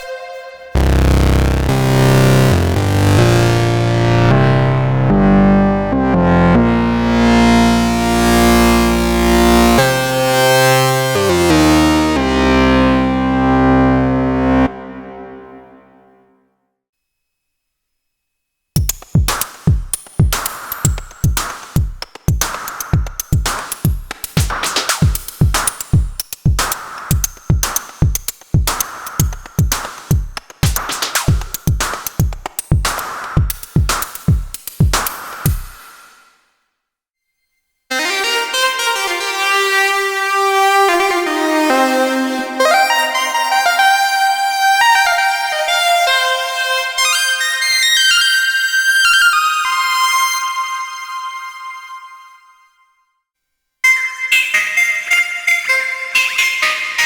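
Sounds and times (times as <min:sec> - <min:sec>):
analog synthesizer sustained notes: 0:00.0 - 0:16.4, 0:37.9 - 0:48.5
drum machine kick: 0:18.8 - 0:36.3
hissy hi-hat and snare hits: 0:18.8 - 0:36.4.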